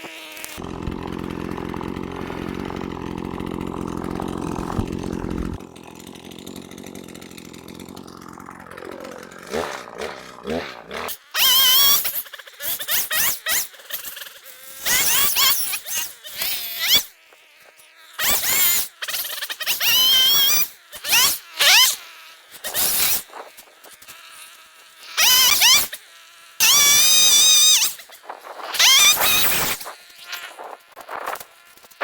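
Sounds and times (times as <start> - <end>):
power saw revving: 0.0 - 12.2.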